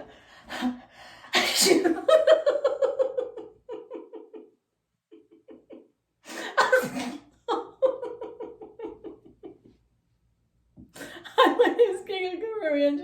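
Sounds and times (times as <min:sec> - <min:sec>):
woman laughing rhythmically: 0:00.0 - 0:09.8, 0:11.0 - 0:12.1
woman mock sneezing: 0:01.4 - 0:02.0.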